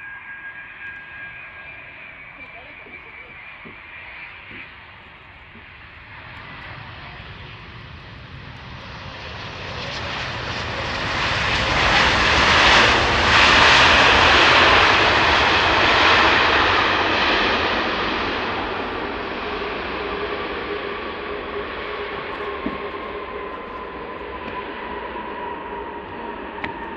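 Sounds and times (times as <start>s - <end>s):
jet airliner engine roar: 0.0s - 26.9s.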